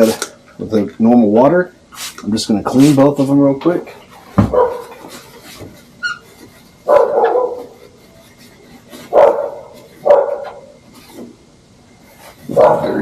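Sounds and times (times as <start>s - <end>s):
dog barking: 4.5s - 4.9s, 6.9s - 7.7s, 9.1s - 10.7s, 12.5s - 13.0s.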